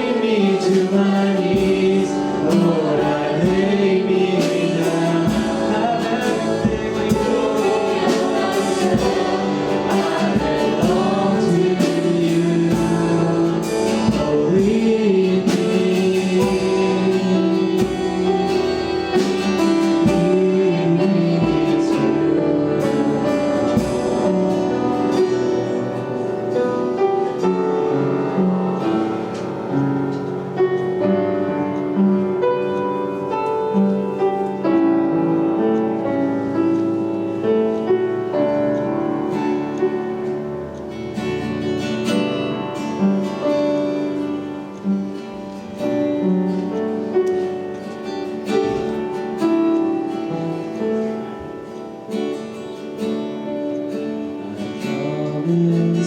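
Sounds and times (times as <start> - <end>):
voices singing worship song: 0.0 - 30.1, 33.4 - 56.0
keyboard chords: 0.0 - 56.0.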